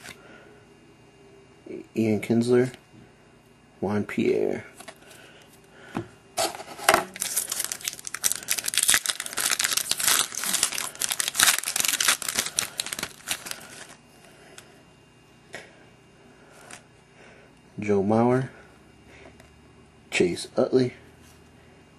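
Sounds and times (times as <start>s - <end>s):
wrapper tearing and crinkling: 6.4s - 14.0s.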